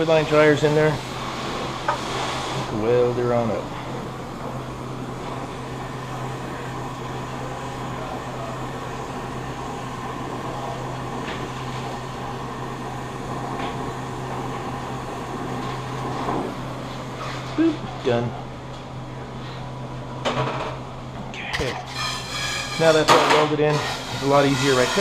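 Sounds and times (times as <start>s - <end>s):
torch flame hissing: 0.0s - 20.1s, 21.6s - 25.0s
constant low hum: 0.0s - 24.2s.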